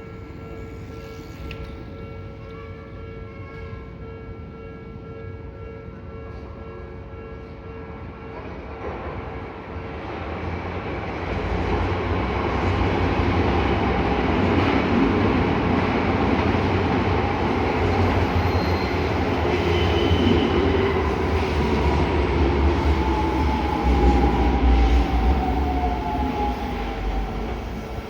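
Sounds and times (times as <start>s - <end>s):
train wheels rumbling: 8.3s - 28.0s.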